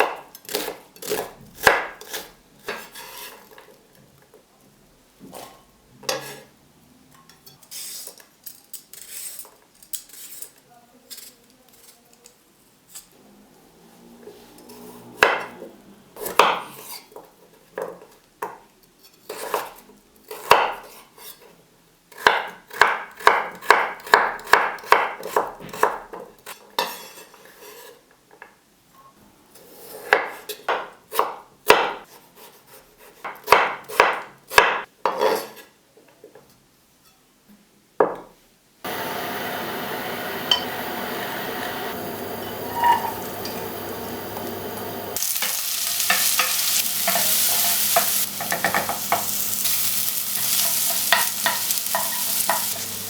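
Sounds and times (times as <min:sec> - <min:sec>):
dishes and utensils clinking: 0:40.3 - 0:53.0.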